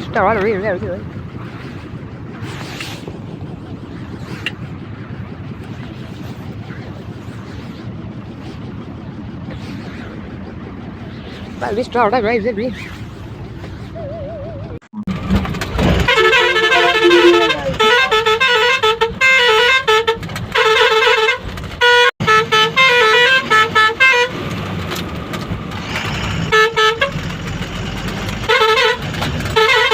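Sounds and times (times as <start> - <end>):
low rumble: 0.0 - 20.8
truck musical horn playing a tune: 16.0 - 24.4, 26.5 - 27.2, 28.4 - 29.9.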